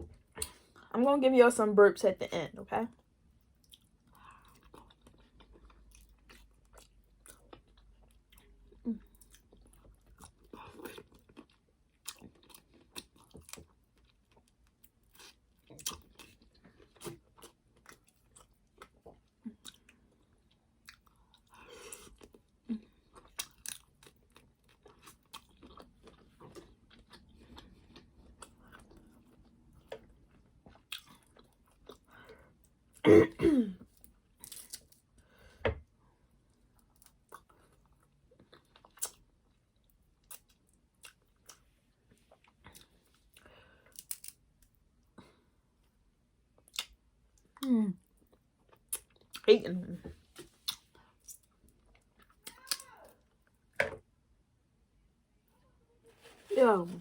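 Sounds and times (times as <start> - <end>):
wet chewing with crunches: 3.4 - 32.4, 36.5 - 44.4, 48.1 - 49.5, 50.2 - 53.5.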